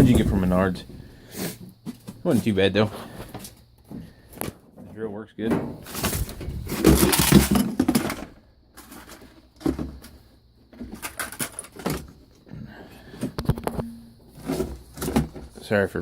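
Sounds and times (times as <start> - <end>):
tools clattering in a tool chest: 4.8 - 12.2, 13.2 - 15.7.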